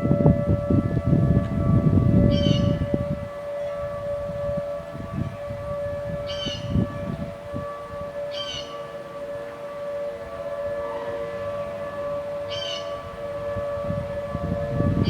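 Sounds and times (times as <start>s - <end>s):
low rumbling noise: 0.0s - 8.1s
warning sirens steady tone: 0.0s - 15.0s.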